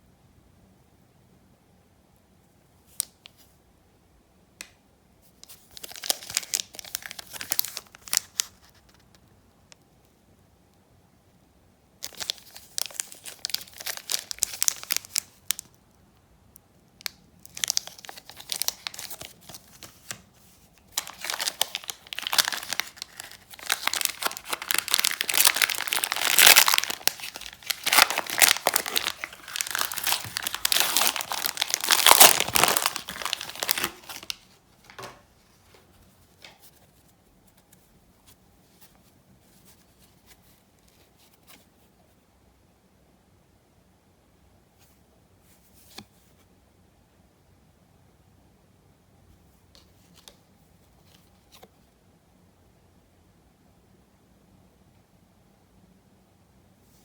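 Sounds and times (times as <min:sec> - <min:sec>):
packaging crinkling: 0:05.4 - 0:09.0, 0:12.0 - 0:15.7, 0:17.0 - 0:36.8.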